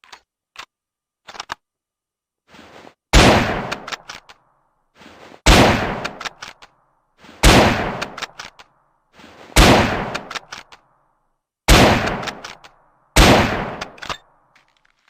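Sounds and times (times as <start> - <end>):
rifle shots: 3.2 - 4.2, 5.5 - 6.4, 7.4 - 8.4, 9.5 - 10.6, 11.7 - 12.6, 13.2 - 14.2
rifle bolt clicks: 3.6 - 4.4, 5.9 - 6.7, 7.9 - 8.7, 10.0 - 10.9, 12.0 - 12.8.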